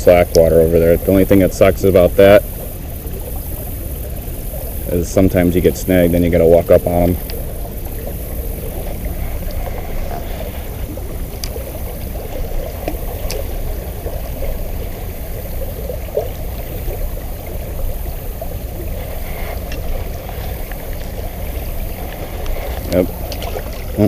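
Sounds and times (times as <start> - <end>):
creek water gurgling: 0.0 - 24.0
faint ticks: 0.1 - 1.4, 6.9 - 24.0.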